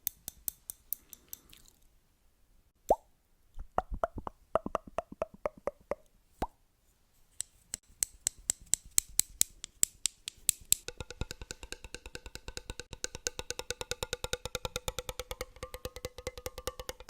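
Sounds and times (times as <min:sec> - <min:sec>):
rapid light tapping on objects: 0:07.8 - 0:17.0.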